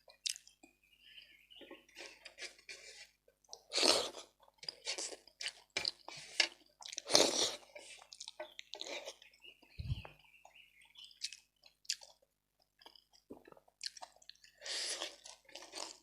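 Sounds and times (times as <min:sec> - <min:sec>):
person chewing with wet mouth noises: 0:00.1 - 0:00.6, 0:03.5 - 0:09.2, 0:11.0 - 0:16.0.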